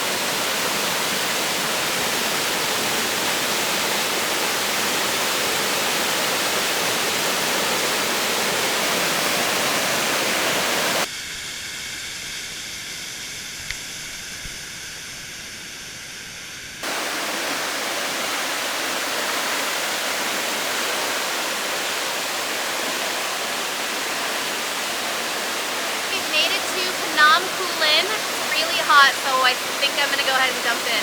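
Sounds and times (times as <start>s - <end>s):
waterfall roaring: 0.0s - 11.1s, 16.8s - 31.0s
steady high tones: 26.1s - 31.0s.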